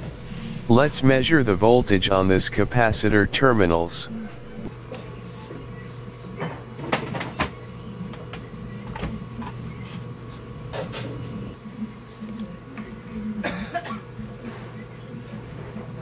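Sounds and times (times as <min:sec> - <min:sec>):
low electrical hum: 0:00.0 - 0:04.7.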